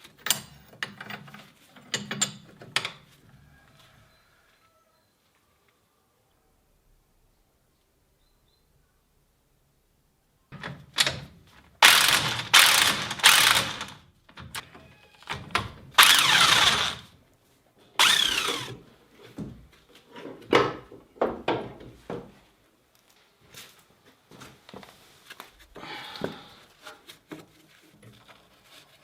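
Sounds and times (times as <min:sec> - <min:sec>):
grinding scrapes: 0:11.8 - 0:14.0, 0:16.0 - 0:17.0.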